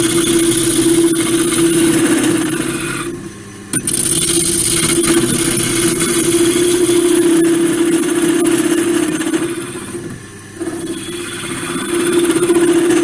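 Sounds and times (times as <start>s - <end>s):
chisel scraping spinning wood: 0.0s - 13.0s
wood lathe humming: 0.0s - 13.0s.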